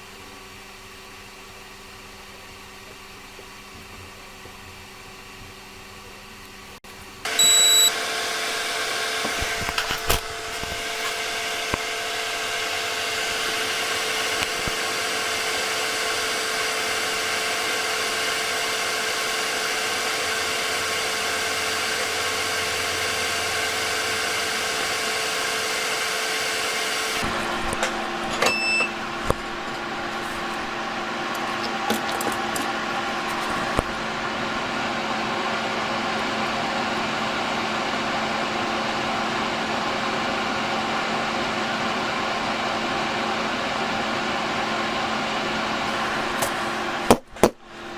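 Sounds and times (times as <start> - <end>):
hot-air blower humming whine: 0.0 - 47.9
short beep: 7.3 - 8.0, 28.4 - 29.0.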